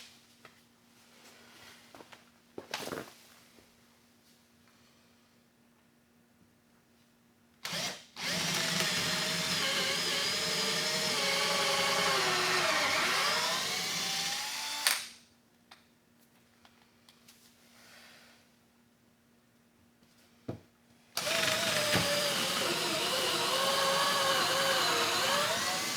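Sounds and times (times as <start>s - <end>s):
power drill boring into wood: 7.7s - 15.1s, 21.2s - 25.9s.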